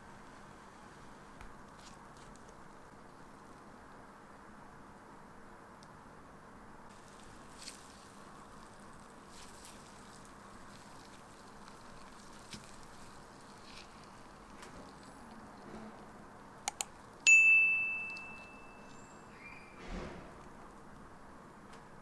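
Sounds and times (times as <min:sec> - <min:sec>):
low steady background hiss: 0:00.0 - 0:22.0
quick clicks: 0:16.6 - 0:17.0
bright bell-like ding: 0:17.3 - 0:19.4.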